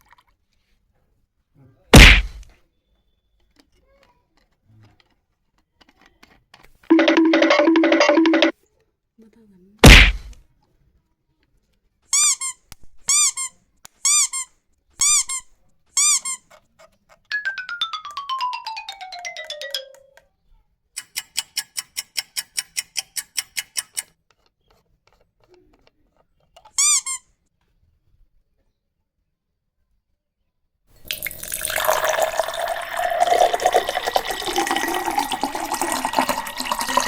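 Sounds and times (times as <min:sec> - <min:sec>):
short even tones: 0:06.9 - 0:08.5
short squeaks: 0:26.6 - 0:27.3.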